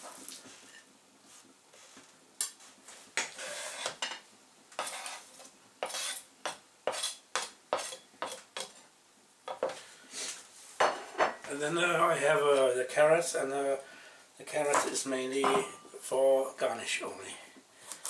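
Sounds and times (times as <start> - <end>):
knife scraping cutting board: 3.2 - 4.0, 4.8 - 8.8.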